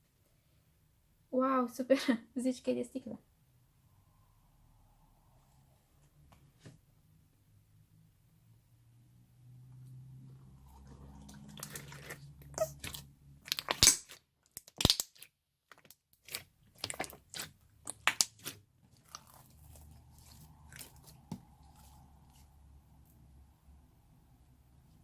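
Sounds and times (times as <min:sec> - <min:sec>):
slime popping and crackling: 0:11.6 - 0:21.8.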